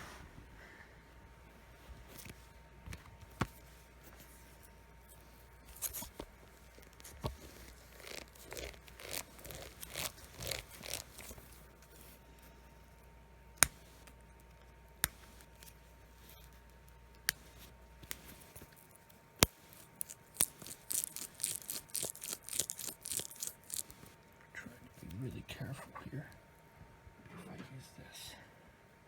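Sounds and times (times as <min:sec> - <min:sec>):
packaging tearing and rustling: 0:05.7 - 0:11.9, 0:18.1 - 0:24.1.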